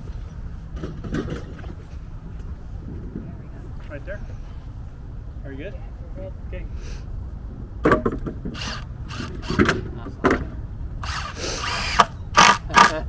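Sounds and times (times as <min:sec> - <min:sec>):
power drill running: 0:08.6 - 0:09.7, 0:11.0 - 0:13.0.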